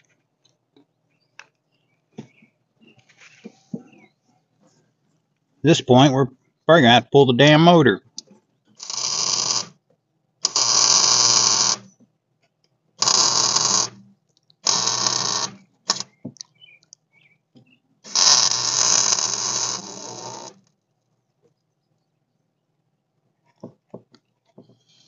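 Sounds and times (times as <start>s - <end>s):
electric welder arcing: 8.8s - 9.8s, 10.4s - 11.9s, 13.0s - 14.0s, 14.6s - 16.1s, 18.1s - 20.7s.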